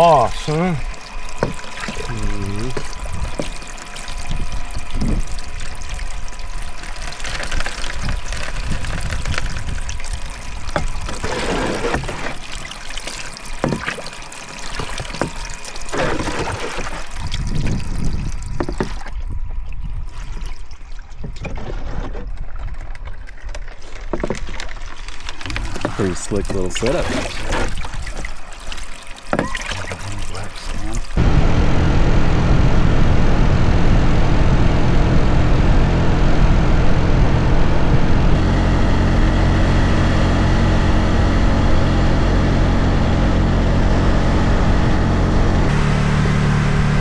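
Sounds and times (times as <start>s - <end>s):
water sloshing and pouring: 0.0s - 31.2s
wind rumble on microphone: 4.2s - 6.2s, 7.5s - 11.1s, 17.2s - 20.5s, 31.2s - 43.0s.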